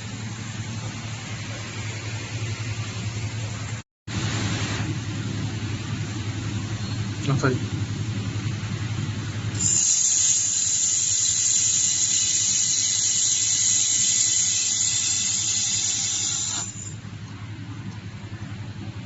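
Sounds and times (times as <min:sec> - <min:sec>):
laser welding gun hissing: 0:09.6 - 0:17.0.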